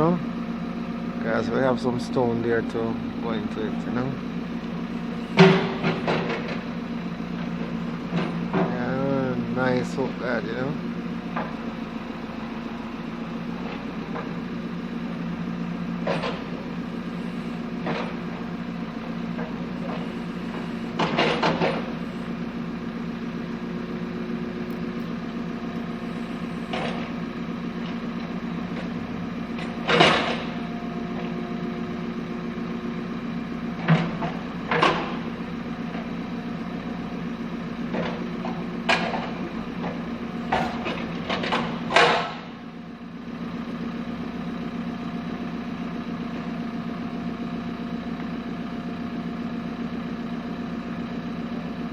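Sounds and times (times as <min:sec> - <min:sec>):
backhoe diesel engine running: 0:00.0 - 0:51.9
metallic clanks and knocks: 0:05.3 - 0:06.6, 0:19.4 - 0:22.0.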